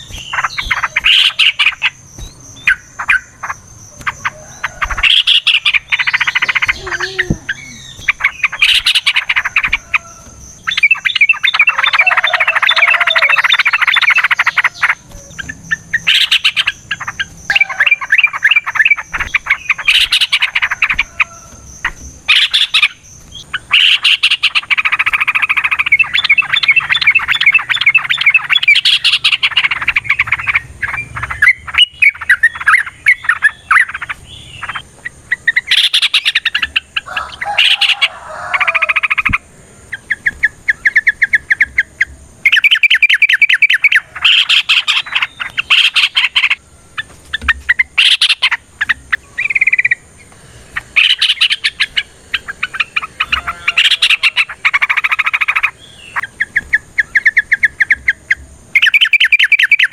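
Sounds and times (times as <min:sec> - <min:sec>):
bird chattering song: 0:00.0 - 0:59.9.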